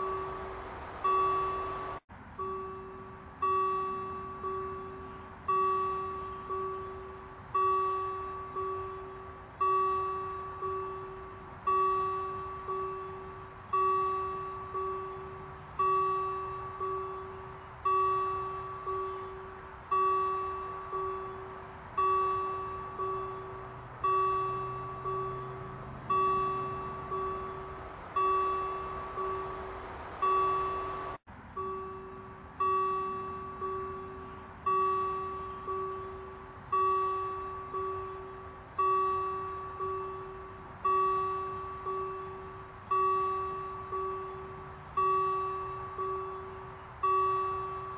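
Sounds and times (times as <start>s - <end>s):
level crossing warning bell: 0.0s - 47.9s.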